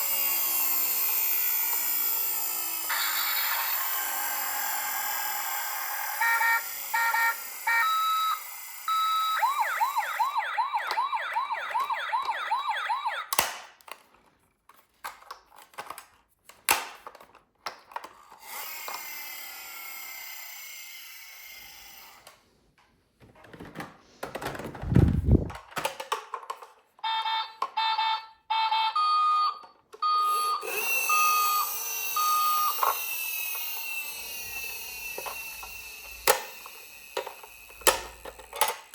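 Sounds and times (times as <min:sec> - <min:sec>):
toy siren two-pitch beeps: 0:02.9 - 0:13.4, 0:27.0 - 0:36.7
toy siren warbling yelp: 0:02.9 - 0:13.4, 0:27.0 - 0:37.9.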